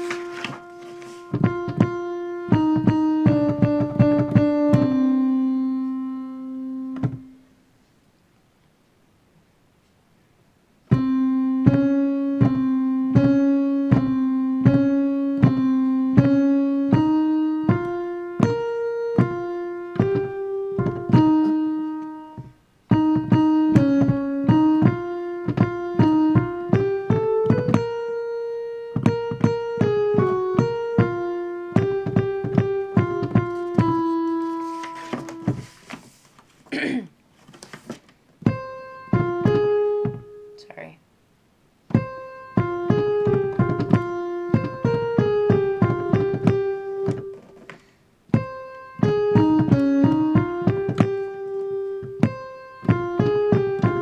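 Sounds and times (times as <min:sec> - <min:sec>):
piano melody: 0:00.0 - 0:07.6, 0:10.8 - 0:36.2, 0:38.4 - 0:40.9, 0:41.8 - 0:54.0.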